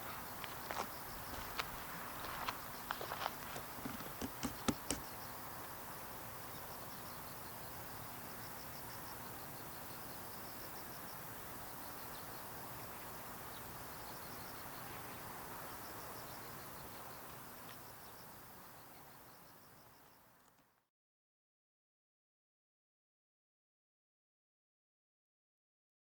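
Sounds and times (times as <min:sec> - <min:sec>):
outdoor background noise: 0:00.0 - 0:20.9
insects chirping in trills: 0:00.1 - 0:20.4
sharp taps: 0:03.6 - 0:05.0.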